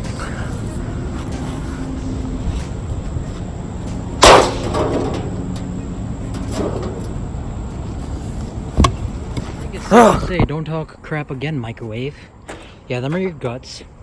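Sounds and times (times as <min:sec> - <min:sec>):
steady low hum: 0:00.0 - 0:14.0
metal clanging impact: 0:03.9 - 0:07.4.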